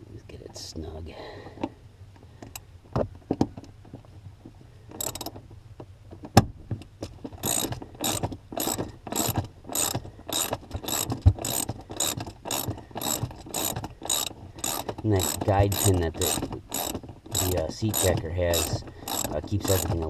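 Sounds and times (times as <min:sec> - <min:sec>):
ratchet wrench clicking: 0:05.0 - 0:05.3, 0:07.4 - 0:20.0.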